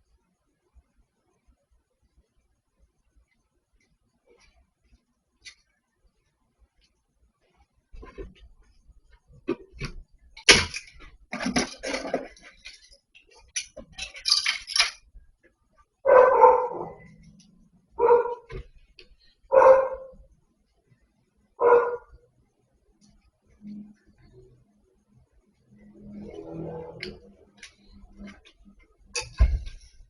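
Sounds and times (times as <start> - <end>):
clattering and rustling: 7.9 - 15.2, 27.1 - 30.0
dog barking: 16.0 - 17.2, 18.0 - 18.5, 19.5 - 20.2, 21.6 - 22.2.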